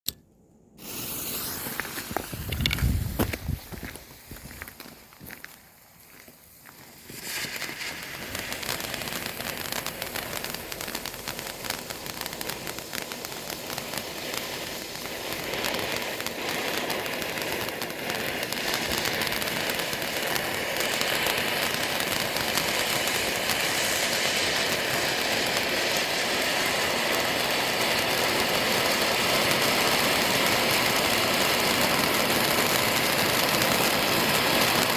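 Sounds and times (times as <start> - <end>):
firework fountain crackling: 0.8 - 34.9
low bumps: 1.7 - 5.4.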